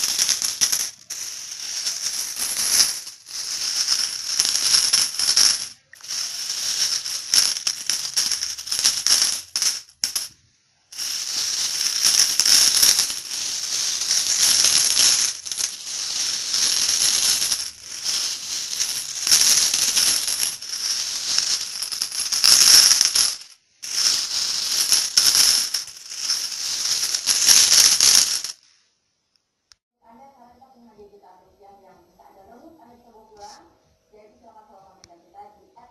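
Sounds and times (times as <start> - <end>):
coins jingling: 0.0 - 10.4, 11.0 - 28.6.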